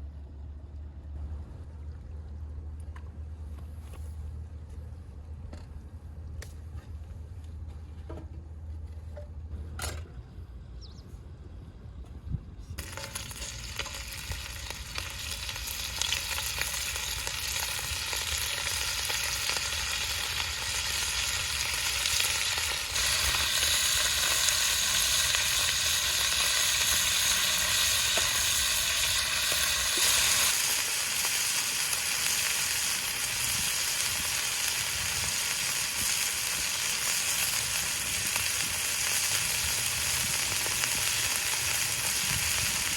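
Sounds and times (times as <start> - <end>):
low hum: 0.0 - 30.9
food sizzling in frying pan: 12.8 - 42.9.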